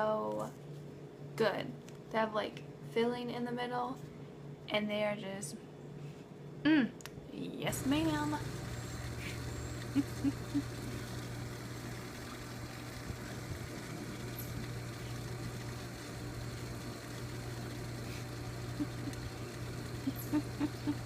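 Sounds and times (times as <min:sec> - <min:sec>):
appliance humming: 0:06.7 - 0:21.0.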